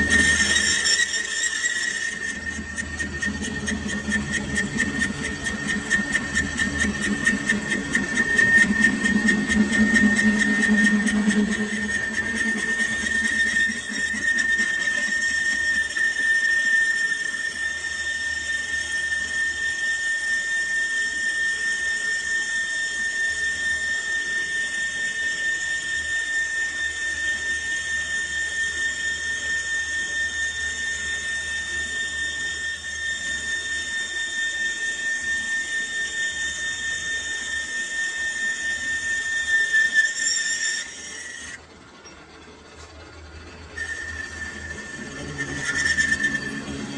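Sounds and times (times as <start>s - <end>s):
metal lathe whining: 0.0s - 46.9s.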